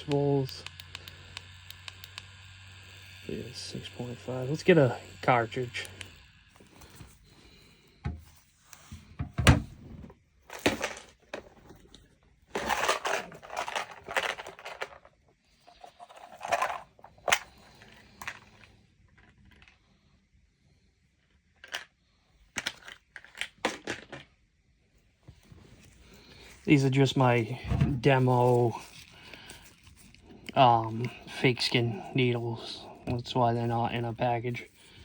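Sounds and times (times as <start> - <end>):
quick clicks: 0.0 - 2.3
rustling and crinkling: 6.6 - 19.8, 25.0 - 33.9.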